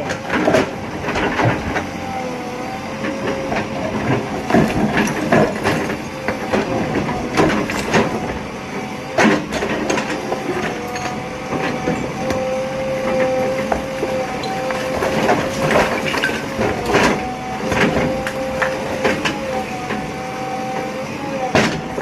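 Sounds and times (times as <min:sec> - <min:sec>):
diesel engine under load: 0:00.0 - 0:22.0
metal clanks and clatters: 0:09.2 - 0:12.0, 0:14.4 - 0:19.5.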